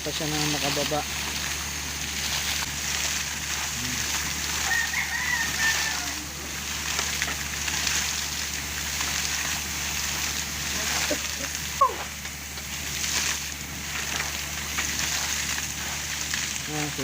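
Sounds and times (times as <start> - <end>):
water and air gushing from well: 0.0 - 17.0
rooster crowing: 4.4 - 6.6.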